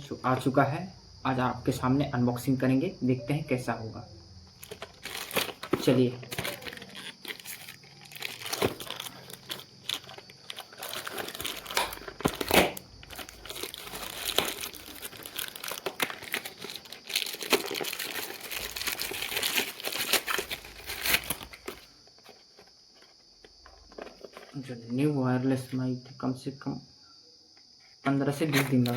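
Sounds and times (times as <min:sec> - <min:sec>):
packaging crinkling and tearing: 0:04.6 - 0:24.6, 0:28.4 - 0:28.9.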